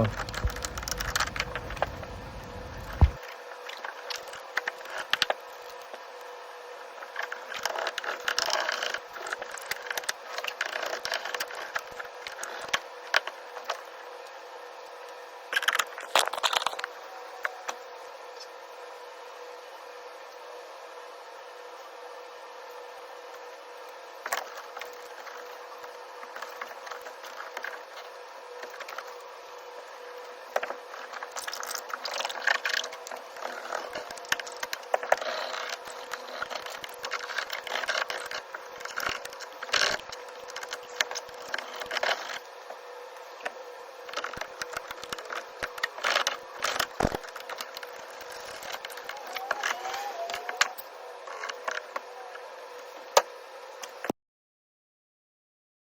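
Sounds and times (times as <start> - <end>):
faint hum: 0.0 - 54.1.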